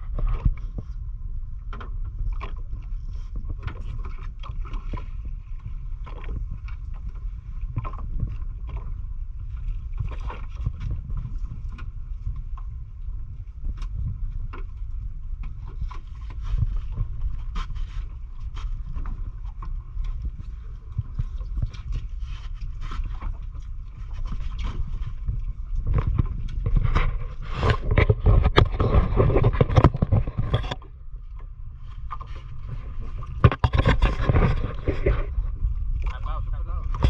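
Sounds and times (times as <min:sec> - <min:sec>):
boat engine low rumble: 0:00.0 - 0:37.0
gear knocking against hull: 0:24.9 - 0:30.9.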